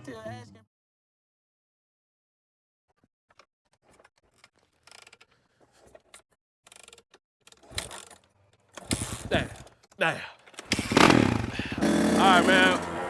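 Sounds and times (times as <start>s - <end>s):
faint mechanical clicks and rattles: 3.3s - 11.5s.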